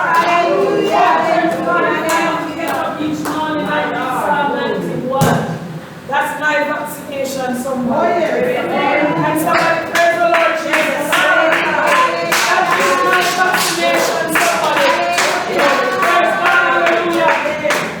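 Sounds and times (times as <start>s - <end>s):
voices singing together: 0.0s - 18.0s
hand clapping: 9.5s - 18.0s.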